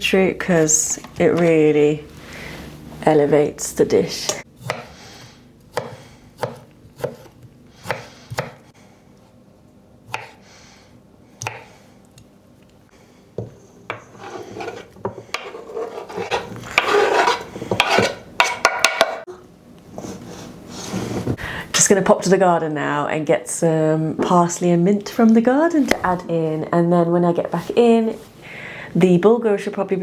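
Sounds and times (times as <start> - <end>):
knife chopping on chopping board: 4.6 - 5.0, 5.7 - 8.6, 10.1 - 10.4, 11.4 - 11.7, 13.4 - 19.2
scraping and clattering: 13.9 - 19.0.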